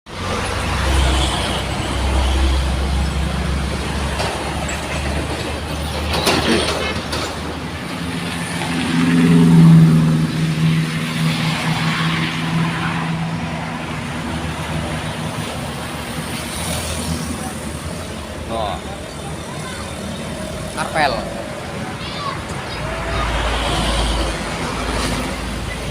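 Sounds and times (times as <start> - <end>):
bus engine rumble: 0.1 - 25.9.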